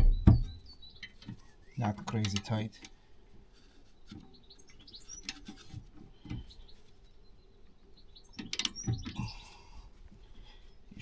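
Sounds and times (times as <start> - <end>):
soft low knocks: 0.0 - 0.7
faint bird chirps: 0.0 - 2.3, 3.6 - 11.0.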